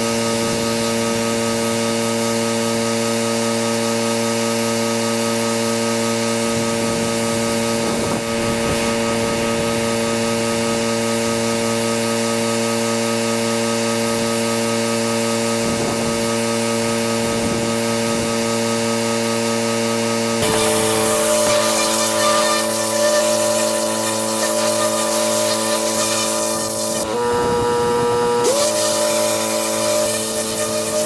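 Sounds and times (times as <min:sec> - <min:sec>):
pressure washer engine humming: 0:05.1 - 0:31.0
water spray hissing: 0:20.4 - 0:27.0, 0:28.4 - 0:31.0.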